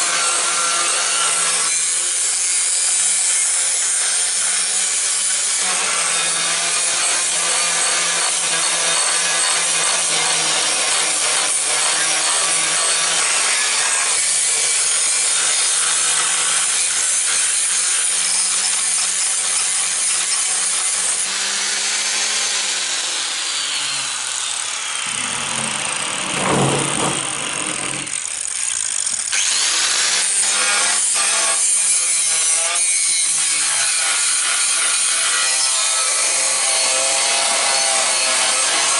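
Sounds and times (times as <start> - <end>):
angle grinder grinding metal: 0.0 - 38.9
grinder motor hum: 21.2 - 29.6.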